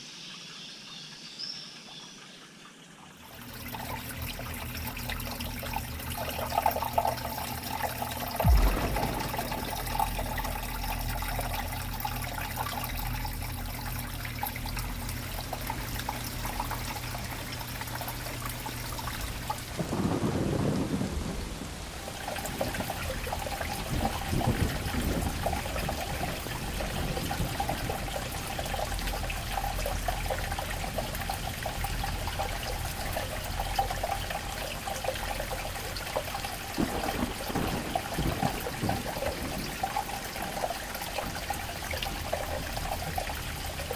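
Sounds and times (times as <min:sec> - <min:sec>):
running water splashing: 0:03.2 - 0:43.9
low rumble: 0:08.4 - 0:14.0.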